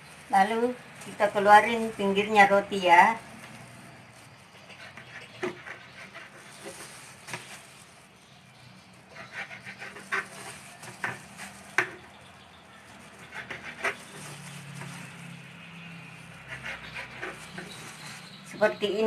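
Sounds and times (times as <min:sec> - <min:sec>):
knife cutting bread crusts: 0:13.2 - 0:15.2, 0:16.4 - 0:18.3.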